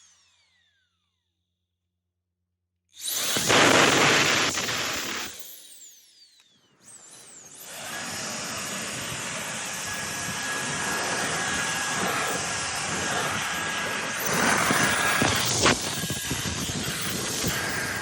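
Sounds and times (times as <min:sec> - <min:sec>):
jet blower whining: 0:03.1 - 0:05.4, 0:06.4 - 0:18.0.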